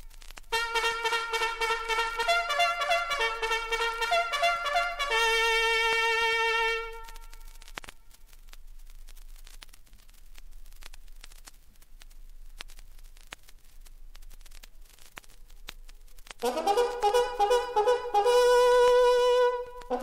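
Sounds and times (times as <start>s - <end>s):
vinyl record crackle: 0.0s - 20.0s
brass horn call: 0.6s - 7.3s, 16.4s - 20.0s.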